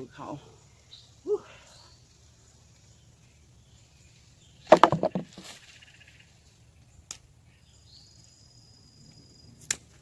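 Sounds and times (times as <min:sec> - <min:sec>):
digging scrapes and knocks: 0:04.7 - 0:05.6.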